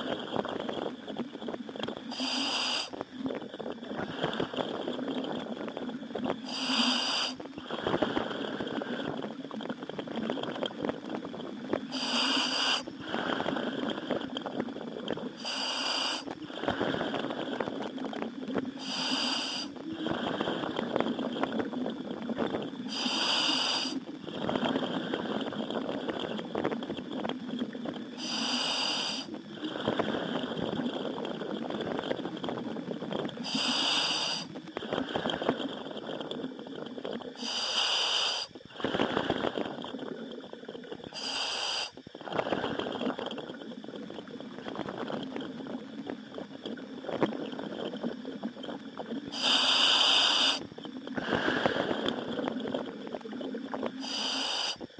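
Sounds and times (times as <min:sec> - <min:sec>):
bubbling crackling noise: 0:00.0 - 0:54.9
hissing inhalation through valve: 0:02.1 - 0:03.0, 0:06.4 - 0:09.2, 0:11.9 - 0:14.2, 0:15.4 - 0:17.6, 0:18.8 - 0:20.9, 0:22.8 - 0:24.0, 0:28.2 - 0:30.6, 0:33.4 - 0:35.6, 0:37.4 - 0:39.7, 0:41.1 - 0:43.1, 0:49.3 - 0:52.5, 0:53.9 - 0:54.9.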